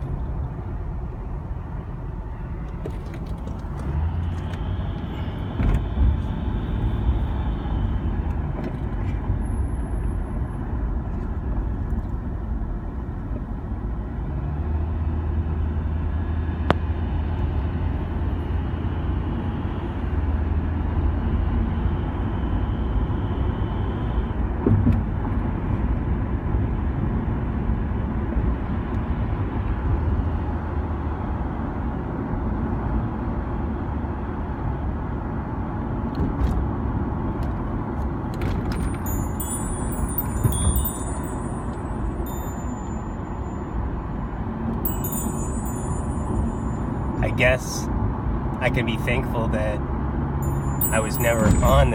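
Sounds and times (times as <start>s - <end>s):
car engine and tyre rumble: 0.0s - 51.9s.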